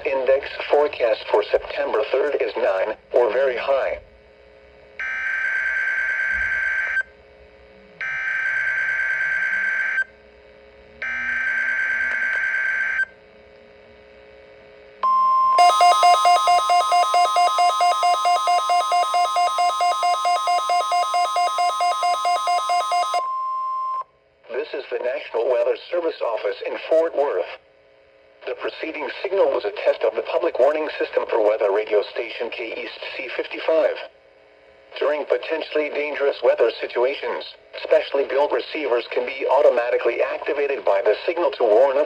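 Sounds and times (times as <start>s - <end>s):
steady warning alarm tone: 15.0s - 24.0s
rapid pulsing beeps: 15.1s - 24.0s.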